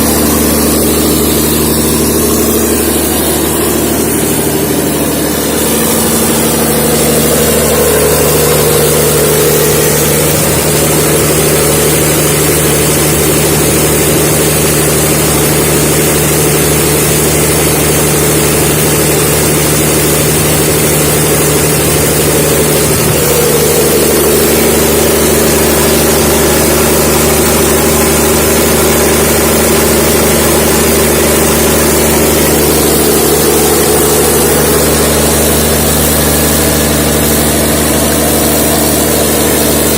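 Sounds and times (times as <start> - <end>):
diesel generator running: 0.0 - 39.9.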